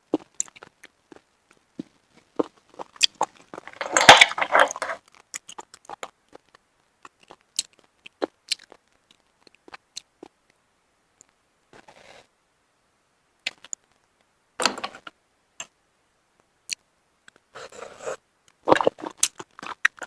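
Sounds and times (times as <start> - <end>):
person eating shellfish: 2.3 - 10.4, 17.9 - 20.0.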